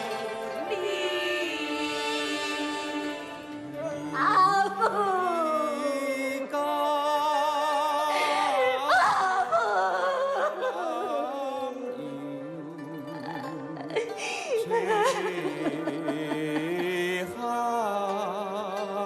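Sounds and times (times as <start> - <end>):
instrumental accompaniment: 0.0 - 6.4
solo voice singing opera: 0.0 - 19.0.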